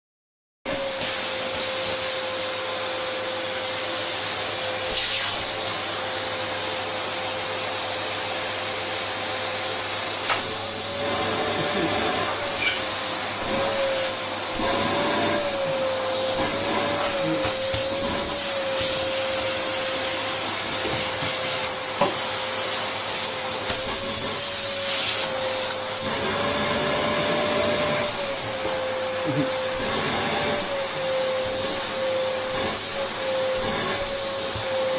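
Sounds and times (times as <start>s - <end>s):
vacuum cleaner motor whine: 0.7s - 34.9s.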